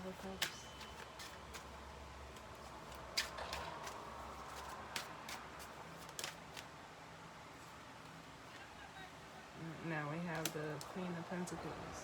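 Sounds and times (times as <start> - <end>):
cards clicking and flicking: 0.1 - 6.7, 10.3 - 10.9.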